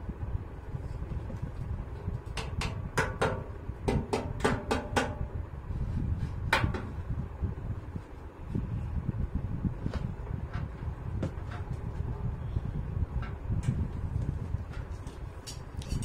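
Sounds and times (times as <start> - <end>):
handling rumble: 4.9 - 16.0.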